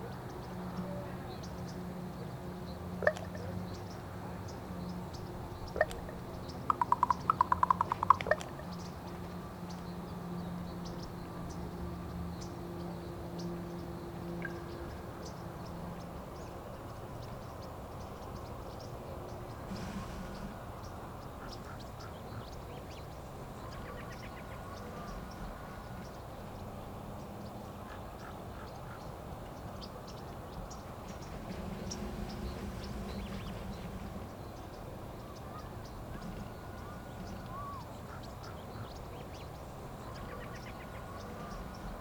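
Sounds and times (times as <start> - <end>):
ravens clicking calls: 3.0 - 3.8, 5.7 - 9.0
soft raven calls: 5.8 - 8.7.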